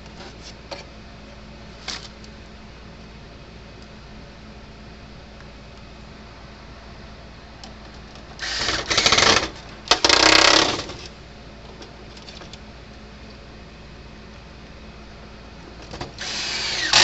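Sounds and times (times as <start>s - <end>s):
small power tool running: 8.4s - 11.0s, 16.2s - 17.0s.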